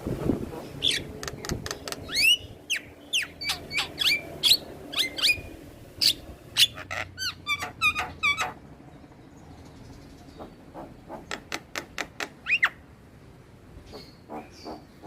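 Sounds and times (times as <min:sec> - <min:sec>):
bird singing harsh notes: 0:01.8 - 0:08.6.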